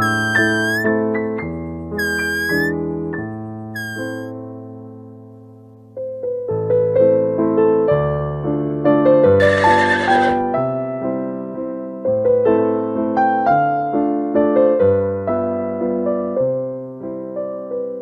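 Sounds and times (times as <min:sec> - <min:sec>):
piano notes and chords: 0:00.0 - 0:05.3.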